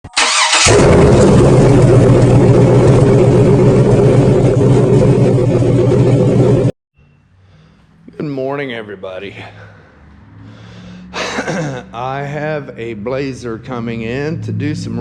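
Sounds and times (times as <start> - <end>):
loud engine running: 0.2 - 6.7.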